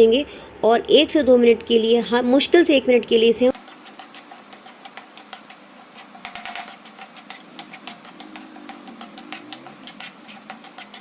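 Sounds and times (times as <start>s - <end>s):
spoon scraping pan: 3.5s - 11.0s.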